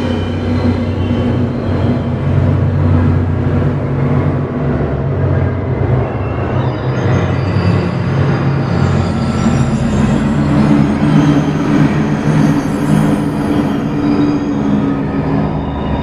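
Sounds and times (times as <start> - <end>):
electronic drone with low tones: 0.0 - 16.0
thin high squealing tones: 6.1 - 16.0.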